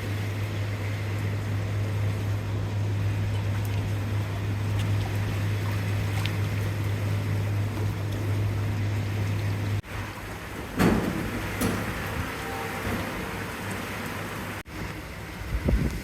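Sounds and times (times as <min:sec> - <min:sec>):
constant low hum: 0:00.0 - 0:16.0
rain drops ticking: 0:00.0 - 0:16.0
heavy rain: 0:09.1 - 0:16.0.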